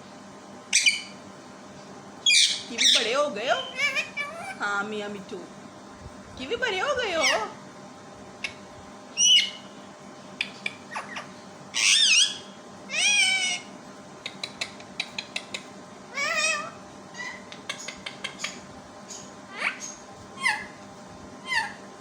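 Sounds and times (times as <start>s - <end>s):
parrot squawking: 0.7s - 1.2s, 2.2s - 4.6s, 7.2s - 7.5s, 9.2s - 9.7s, 10.4s - 13.7s, 16.1s - 20.8s, 21.4s - 21.8s.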